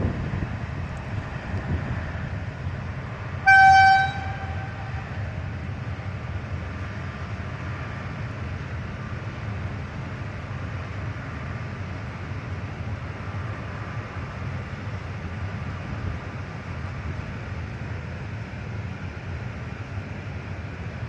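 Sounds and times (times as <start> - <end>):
train rumbling: 0.0 - 21.0
train horn blast: 3.4 - 5.2.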